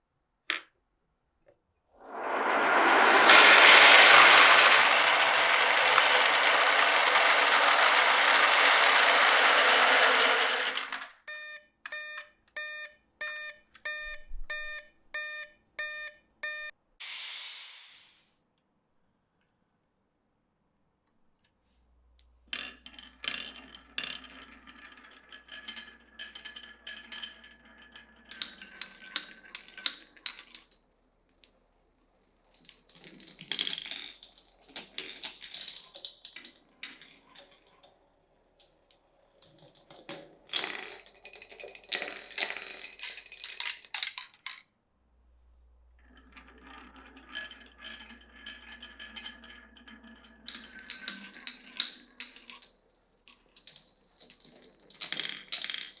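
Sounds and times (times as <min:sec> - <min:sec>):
marbles rolling on wooden run: 0:02.0 - 0:11.2, 0:38.4 - 0:44.6.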